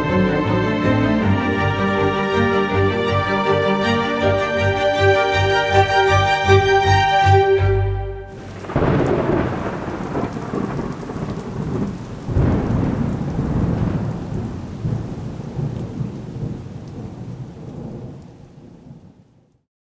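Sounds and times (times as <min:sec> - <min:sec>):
thunder rolling: 0:08.3 - 0:19.2
rain falling steadily: 0:08.3 - 0:19.7.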